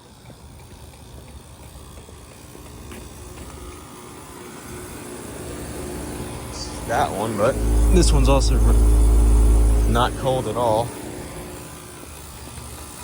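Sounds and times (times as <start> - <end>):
heat pump mechanical hum: 0.0 - 13.0
steady tone: 6.3 - 11.7.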